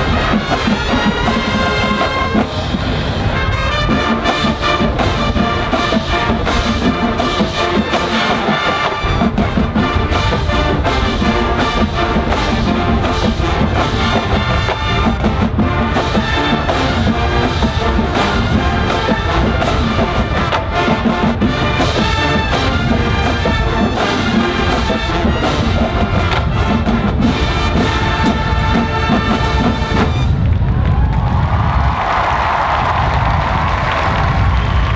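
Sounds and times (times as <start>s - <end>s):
brass-led music with percussion: 0.0s - 30.8s
crowd cheering and applauding: 27.4s - 34.9s.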